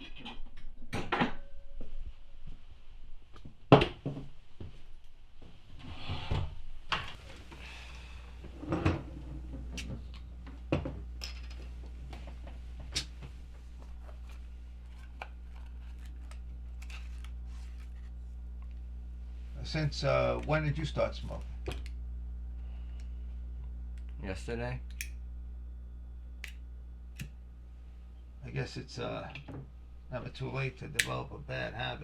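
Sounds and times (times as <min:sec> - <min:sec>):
steady low hum: 0:04.3 - 0:32.0
objects being handled: 0:11.2 - 0:18.8.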